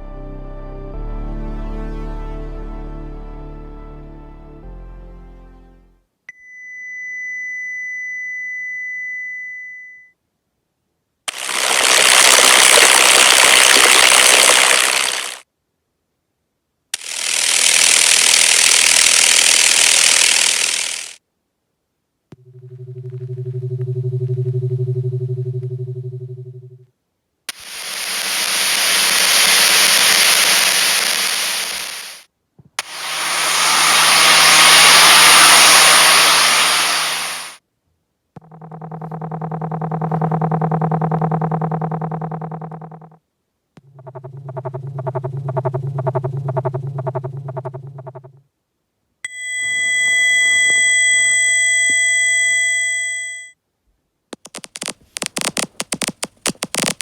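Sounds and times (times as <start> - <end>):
fast irregular clicking: 11.3 - 15.4, 17.0 - 21.2, 27.5 - 32.2, 38.4 - 43.2, 43.8 - 48.4, 54.3 - 57.0
high-pitched hissing tone: 11.3 - 15.4, 27.5 - 32.2, 32.8 - 37.6
low hum: 22.3 - 26.9, 32.8 - 37.6, 38.4 - 43.2, 43.8 - 48.4
pulsing low buzz: 22.4 - 26.9, 32.8 - 37.6, 38.4 - 43.2, 43.8 - 48.4.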